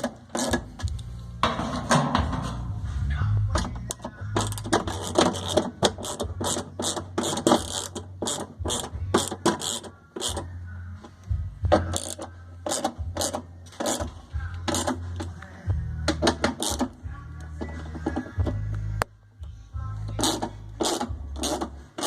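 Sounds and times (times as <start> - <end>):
ratchet wrench clicking: 4.4 - 10.4, 11.9 - 14.1, 16.2 - 17.0, 20.2 - 21.7.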